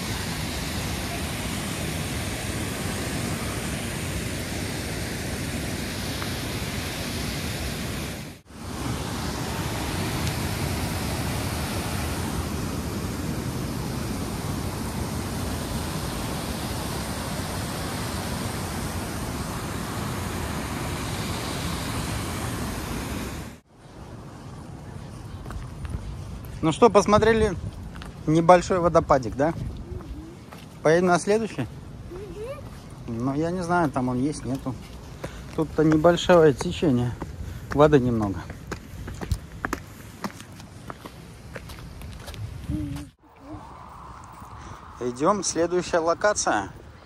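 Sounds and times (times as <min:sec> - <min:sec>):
waterfall rushing water: 0:00.0 - 0:23.6.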